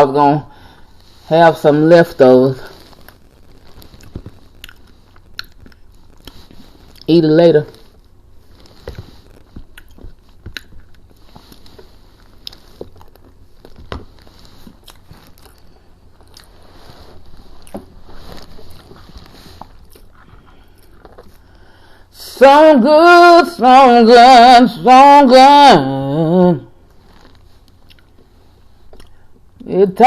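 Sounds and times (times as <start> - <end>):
person chewing crunchy food: 2.7 - 7.1, 7.9 - 21.8, 26.9 - 29.5.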